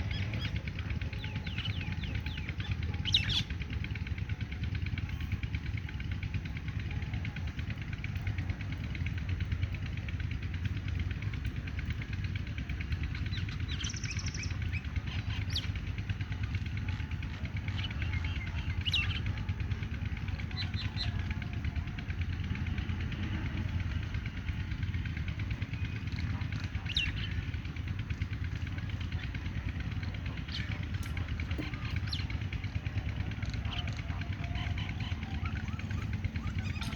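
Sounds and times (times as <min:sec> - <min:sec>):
mynas chirping and whistling: 0:00.0 - 0:03.5, 0:26.0 - 0:27.5, 0:33.6 - 0:36.9
low engine rumble: 0:00.0 - 0:36.9.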